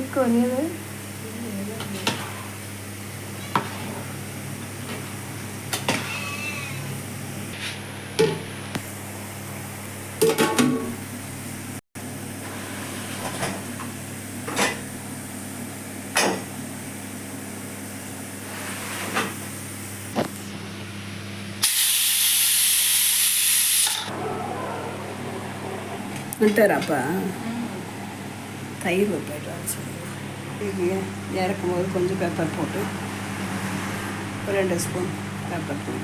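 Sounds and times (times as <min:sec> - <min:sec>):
loud hiss: 0:21.6 - 0:24.1
steady low hum: 0:24.1 - 0:36.0.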